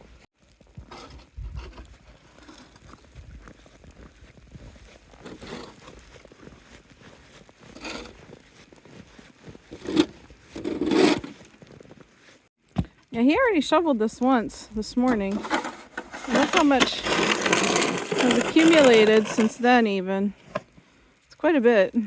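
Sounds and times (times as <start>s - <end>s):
footsteps crunching through snow: 0.1s - 12.5s.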